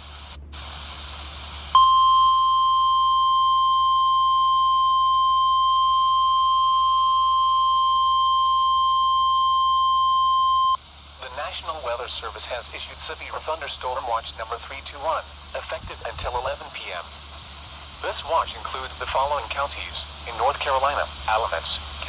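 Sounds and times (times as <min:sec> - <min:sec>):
radio static: 0:00.0 - 0:01.9, 0:04.9 - 0:22.0
steady warning alarm tone: 0:01.7 - 0:10.8.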